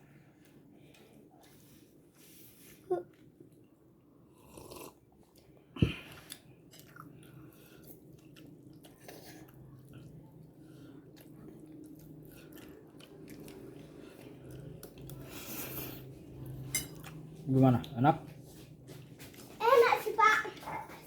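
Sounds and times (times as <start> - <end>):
person chewing noodles: 3.1 - 18.0.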